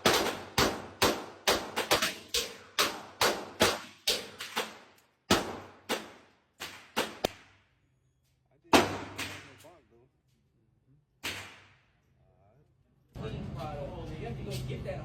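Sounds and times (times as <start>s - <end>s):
handgun shots: 0.0s - 7.6s, 8.7s - 9.7s, 11.2s - 11.8s.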